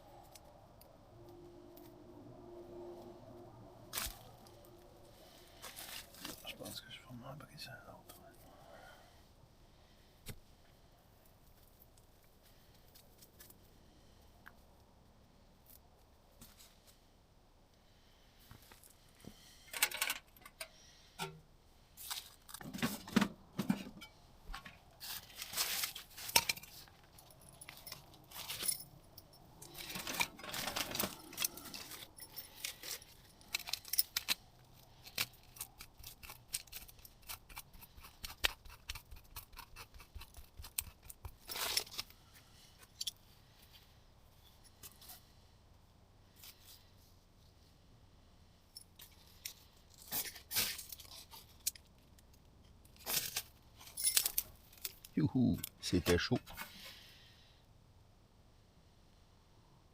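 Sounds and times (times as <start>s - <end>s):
rustling: 3.9s - 6.7s, 24.1s - 45.5s.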